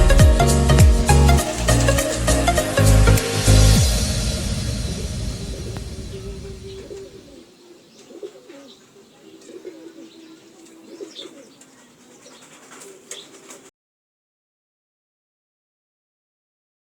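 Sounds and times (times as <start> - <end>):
background music: 0.0 - 7.0
pigeons cooing: 1.0 - 3.0, 4.8 - 13.7.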